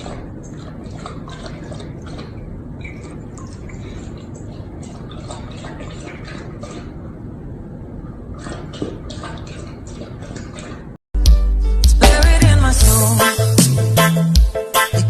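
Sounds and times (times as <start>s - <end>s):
water splashing and dripping: 0.0s - 11.0s.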